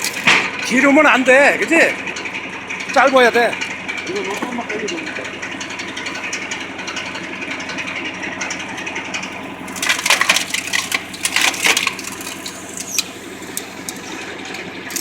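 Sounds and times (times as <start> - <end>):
tractor engine humming: 0.0 - 15.0
log cracking and splintering: 8.5 - 15.0.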